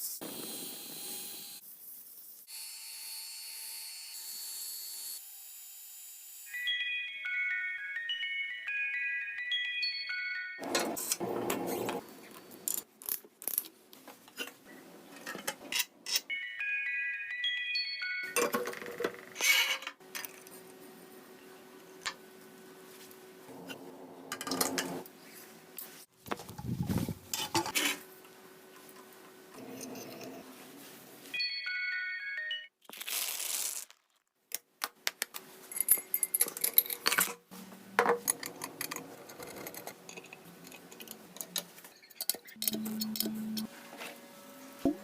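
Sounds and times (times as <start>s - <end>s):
metal tools clinking: 35.7s - 37.4s.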